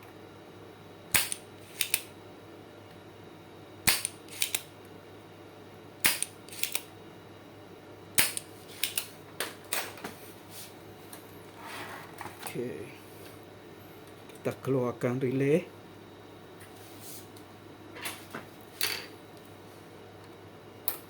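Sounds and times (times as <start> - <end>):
desoldering pump snapping: 1.1 - 2.1, 3.8 - 4.7, 6.0 - 6.9, 8.2 - 9.2.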